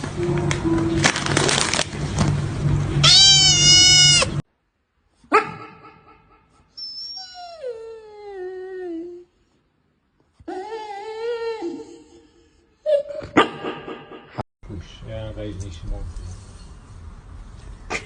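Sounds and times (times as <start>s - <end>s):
background hum and noise: 0.0s - 4.4s, 5.1s - 18.0s
cat meowing: 3.0s - 4.4s.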